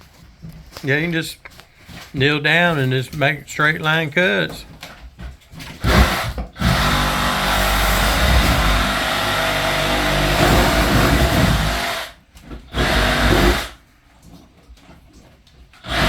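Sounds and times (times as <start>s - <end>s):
circular saw cutting: 5.8s - 13.8s.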